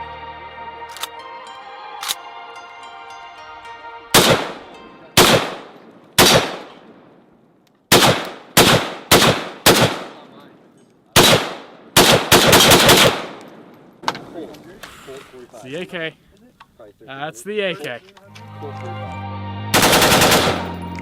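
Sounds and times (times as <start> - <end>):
gunshots with ringing echo: 4.2 - 7.2, 7.9 - 10.4, 11.2 - 14.0, 19.8 - 20.8.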